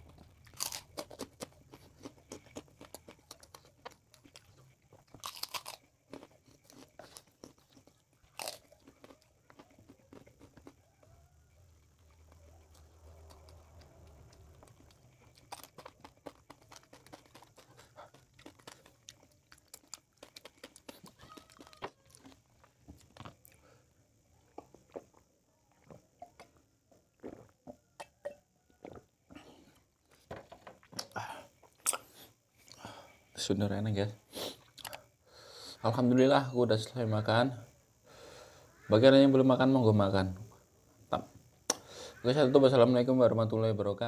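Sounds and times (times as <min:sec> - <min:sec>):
person chewing and crunching food: 0:00.0 - 0:33.1, 0:34.4 - 0:35.2
mouth clicks: 0:41.7 - 0:42.0.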